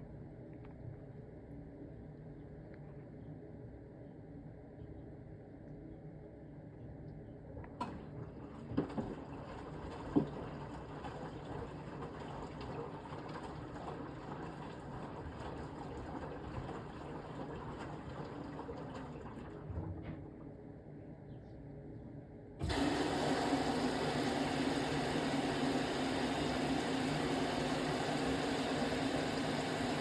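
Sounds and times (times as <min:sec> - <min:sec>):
washing machine filling with water: 0:07.8 - 0:20.4, 0:22.6 - 0:30.0.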